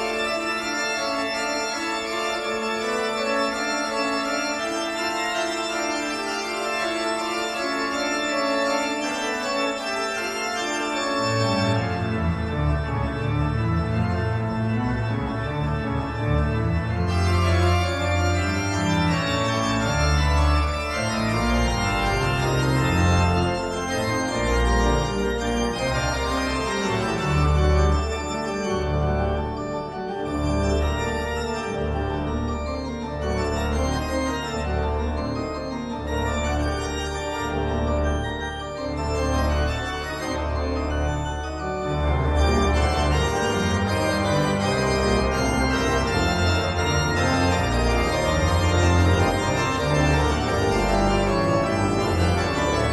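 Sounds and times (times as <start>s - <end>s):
organ-like sustained chords: 0.0s - 52.9s.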